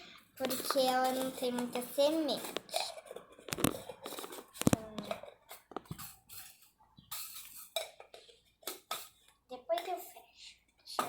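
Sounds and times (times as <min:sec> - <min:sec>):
plastic container clicking and knocking: 0:00.4 - 0:06.1.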